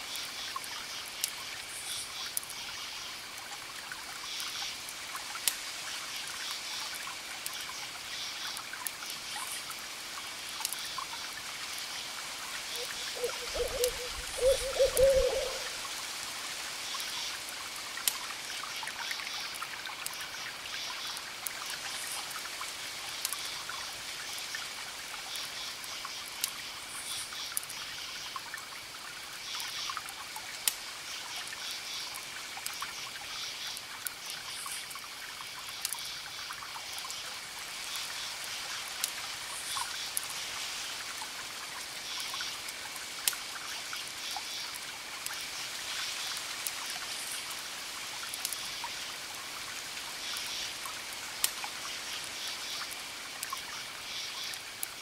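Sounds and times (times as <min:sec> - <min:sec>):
owl hooting: 0:12.8 - 0:15.8.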